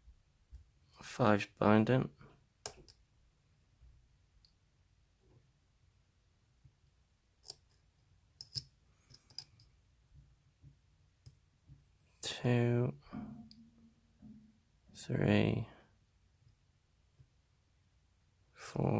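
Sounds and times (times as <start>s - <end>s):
metallic lock pick clicks: 7.4s - 7.8s, 8.4s - 9.7s.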